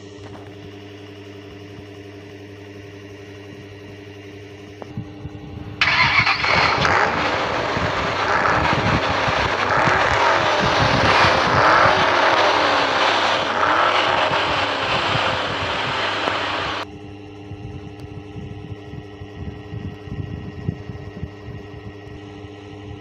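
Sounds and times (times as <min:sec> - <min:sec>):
car engine revving: 0:05.8 - 0:16.8
loud rushing noise: 0:05.8 - 0:16.8.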